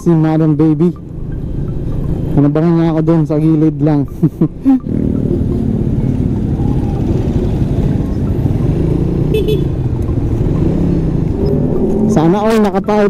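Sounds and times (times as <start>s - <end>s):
motorcycle engine running: 4.6s - 13.0s.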